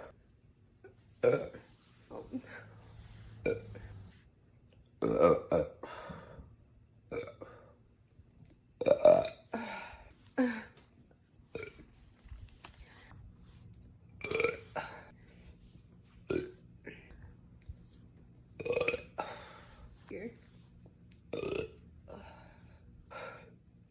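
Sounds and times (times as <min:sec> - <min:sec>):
woman burping: 0:01.2 - 0:01.6, 0:03.4 - 0:03.8, 0:05.0 - 0:05.9, 0:07.1 - 0:07.6, 0:08.8 - 0:09.6, 0:14.2 - 0:15.1, 0:18.6 - 0:19.4, 0:21.3 - 0:21.8.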